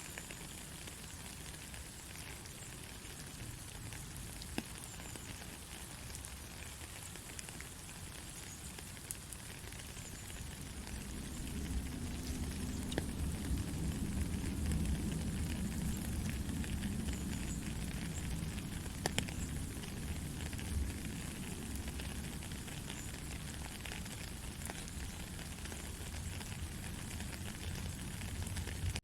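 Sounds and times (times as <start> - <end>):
soft rain patter: 0.0 - 29.0
sharp drip clicks: 16.9 - 19.6.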